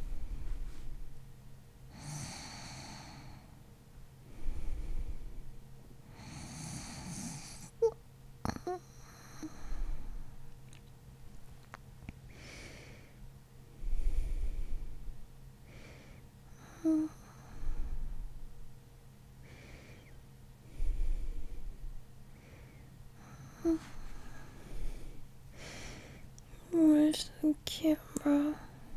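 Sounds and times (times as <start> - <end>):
light snoring: 1.9 - 3.5, 6.2 - 10.2, 23.2 - 25.9
woman breathing deeply in sleep: 1.9 - 3.6, 4.2 - 5.5, 6.1 - 7.7, 8.8 - 10.4, 12.3 - 18.4, 19.4 - 26.4.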